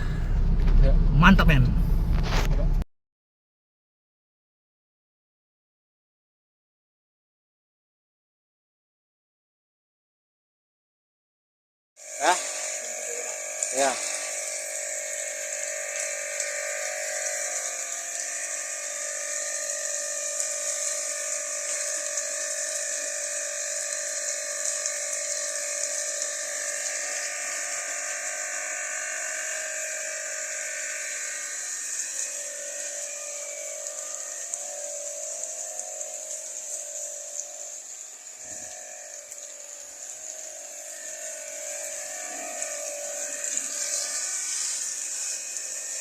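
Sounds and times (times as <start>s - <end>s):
electric water pump running: 12.0s - 46.0s
water spraying hiss: 12.0s - 46.0s.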